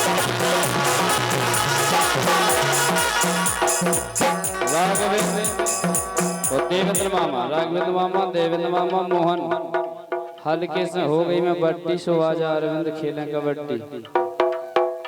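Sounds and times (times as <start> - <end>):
drums and rattle beat: 0.0 - 7.7, 14.2 - 15.0
gliding melodic line: 0.8 - 7.1.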